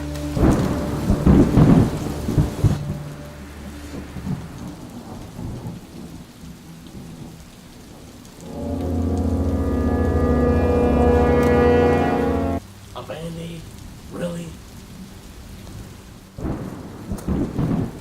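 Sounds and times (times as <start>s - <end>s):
thunder rumbling: 0.0s - 12.6s, 16.4s - 18.0s
rain pattering: 0.0s - 18.0s
low droning tone: 8.4s - 12.6s.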